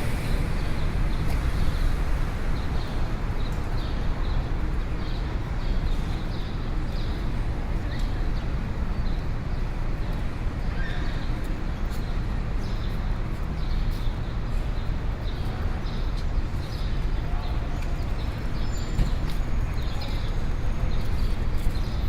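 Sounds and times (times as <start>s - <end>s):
low traffic rumble: 0.0s - 22.0s.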